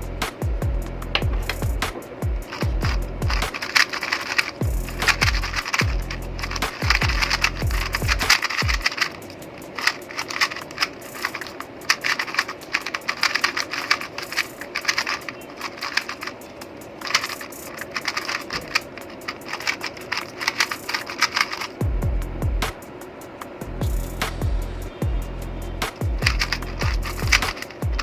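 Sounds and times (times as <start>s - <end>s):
fast plastic clicks of a puzzle cube: 9.7s - 21.8s.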